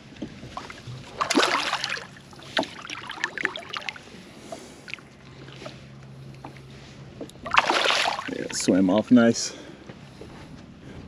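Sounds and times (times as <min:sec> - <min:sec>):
water splashing beside boat: 0:00.0 - 0:06.5, 0:07.2 - 0:08.9.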